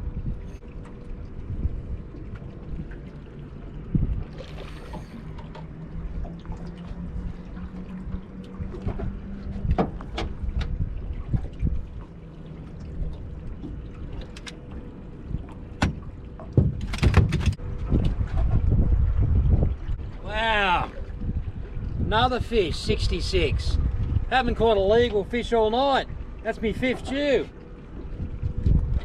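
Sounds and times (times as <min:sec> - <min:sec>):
low steady hum: 0:00.0 - 0:29.0
wind rumbling on microphone: 0:00.0 - 0:29.0
sharp knocks and clicks: 0:15.8 - 0:18.1.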